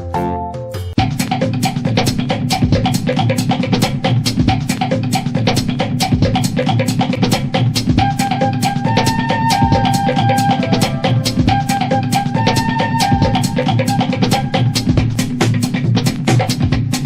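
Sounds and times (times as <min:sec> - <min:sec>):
fast drum beat: 0:00.0 - 0:17.0
bass line: 0:06.0 - 0:17.0.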